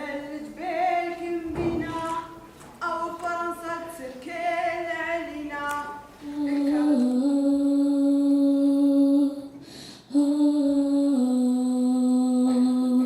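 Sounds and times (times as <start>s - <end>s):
woman singing long notes: 0.0s - 13.0s.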